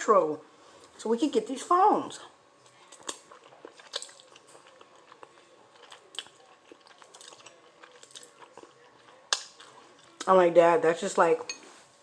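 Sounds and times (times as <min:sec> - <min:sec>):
person chewing noodles: 0:02.6 - 0:10.3
wet mouth clicks and smacks: 0:09.3 - 0:09.7.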